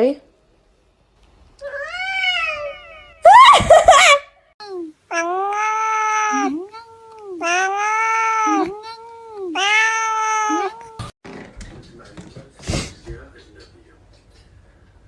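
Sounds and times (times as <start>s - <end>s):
cat meowing: 5.1s - 11.1s.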